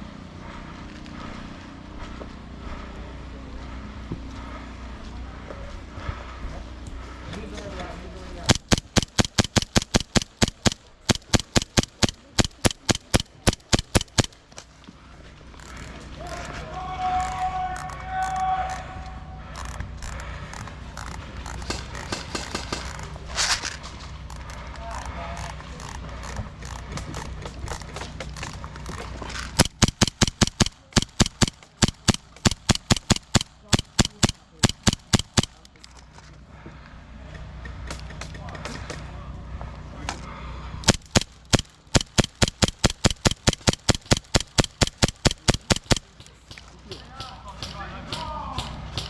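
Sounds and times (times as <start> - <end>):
airsoft gun rapid shots: 8.5 - 14.4, 20.0 - 23.2, 29.6 - 35.6, 40.8 - 46.3.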